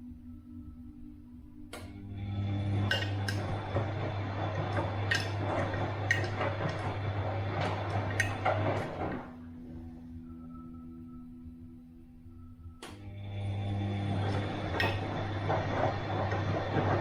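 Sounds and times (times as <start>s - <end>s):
washing machine motor hum: 0.0s - 17.0s
water and laundry sloshing: 2.9s - 9.4s.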